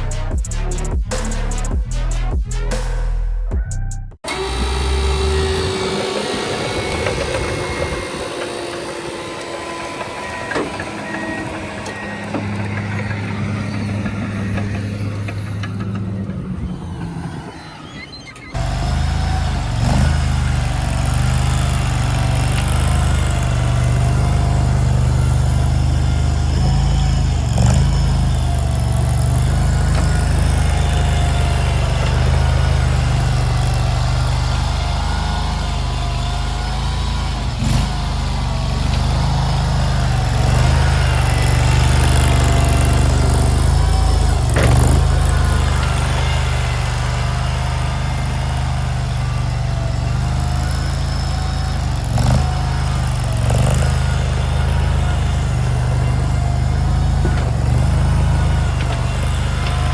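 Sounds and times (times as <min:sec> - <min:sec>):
short clanks: 0:04.2 - 0:25.6
skid steer engine running: 0:04.2 - 0:59.9.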